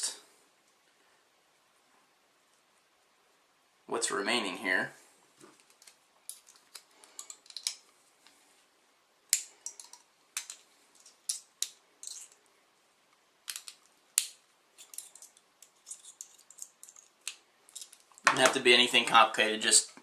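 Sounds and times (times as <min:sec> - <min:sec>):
wire clicking while twisted: 0:05.5 - 0:07.9
wire snapping: 0:13.5 - 0:18.5.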